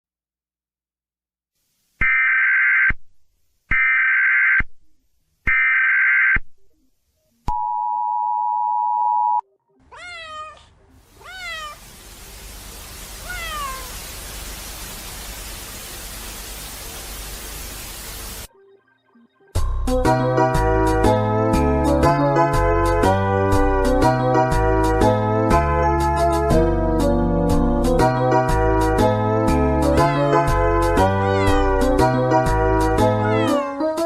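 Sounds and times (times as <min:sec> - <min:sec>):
cat meowing: 0:09.8 - 0:11.8, 0:13.1 - 0:14.0, 0:30.0 - 0:31.9, 0:33.0 - 0:34.0
loud static hiss: 0:10.9 - 0:18.5.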